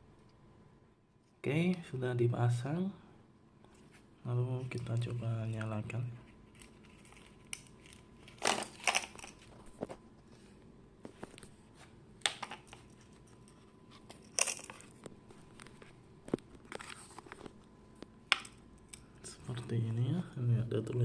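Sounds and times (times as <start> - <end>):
packaging rustling: 6.5 - 10.0.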